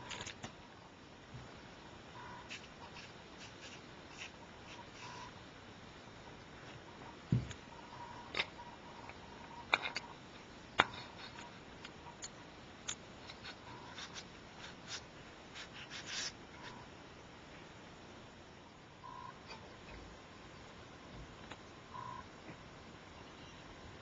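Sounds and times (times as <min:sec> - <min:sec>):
dull thump: 0:07.3 - 0:07.5.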